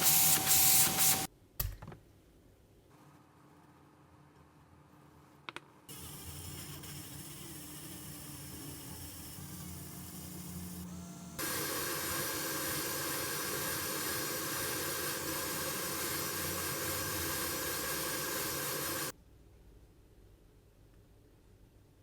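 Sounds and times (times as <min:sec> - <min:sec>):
loud steady hiss: 0:11.4 - 0:19.1.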